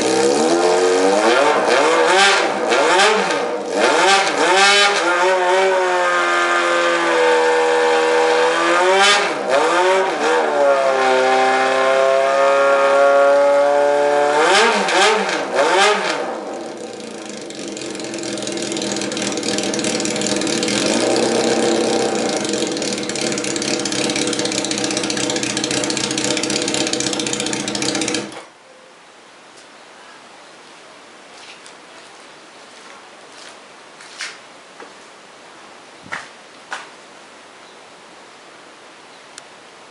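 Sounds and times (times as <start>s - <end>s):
motorcycle engine revving: 0.0s - 28.5s.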